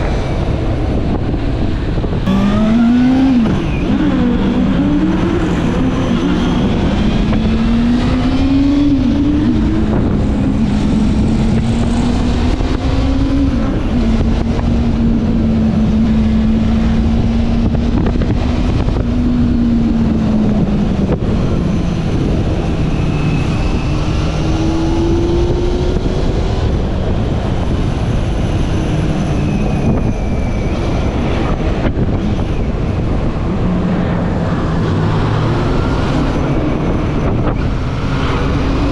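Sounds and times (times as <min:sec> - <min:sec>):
motorcycle engine running: 0:02.3 - 0:04.4.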